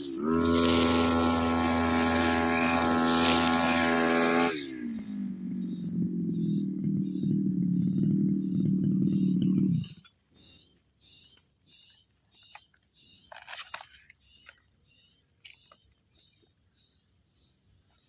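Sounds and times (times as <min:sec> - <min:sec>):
loud low hum: 0:00.0 - 0:10.0
insect chirping: 0:00.0 - 0:18.0.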